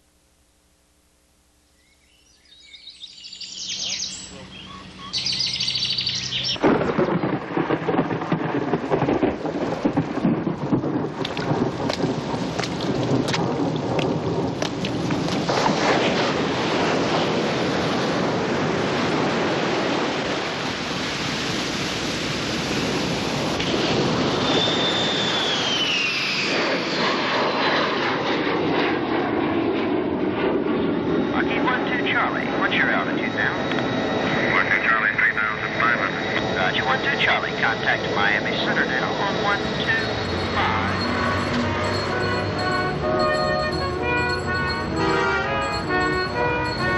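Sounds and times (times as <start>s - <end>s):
thunder cracks and rumbling: 6.5s - 34.6s, 35.4s - 42.6s
heavy rain: 6.6s - 24.6s
falling whistle-like tone: 24.4s - 26.9s, 39.6s - 46.9s.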